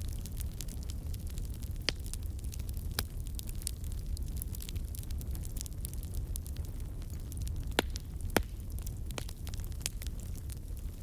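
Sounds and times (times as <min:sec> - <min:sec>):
low steady fire rumble: 0:00.0 - 0:11.0
wood fire crackling: 0:00.0 - 0:11.0.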